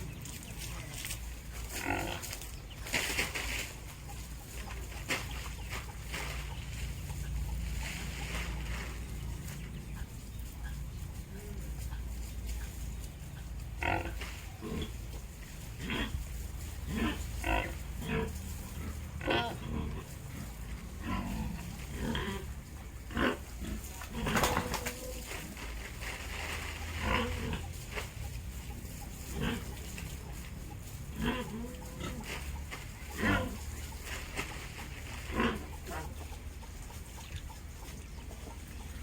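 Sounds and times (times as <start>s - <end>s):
pig grunting and squealing: 0.0s - 2.4s, 13.4s - 36.6s
steady low rumble: 0.0s - 24.3s.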